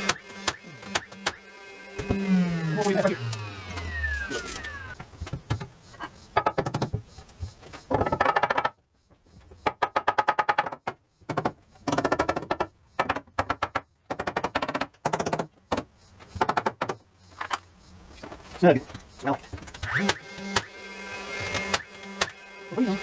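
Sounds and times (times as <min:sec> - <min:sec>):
power tool clattering bursts: 0:00.0 - 0:05.0, 0:19.7 - 0:23.0.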